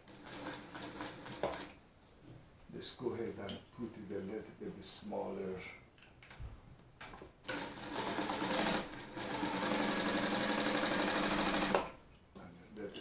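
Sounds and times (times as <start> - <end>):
industrial sewing machine stitching: 0.0 - 1.7, 7.5 - 11.9.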